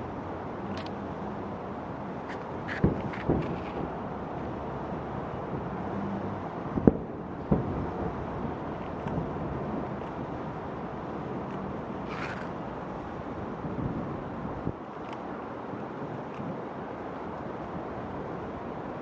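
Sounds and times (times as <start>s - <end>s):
steady outdoor rumble: 0.0s - 19.0s.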